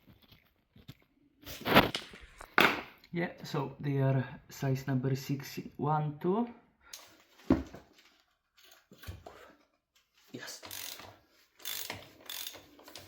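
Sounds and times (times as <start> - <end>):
ratchet clicking: 10.7 - 13.0.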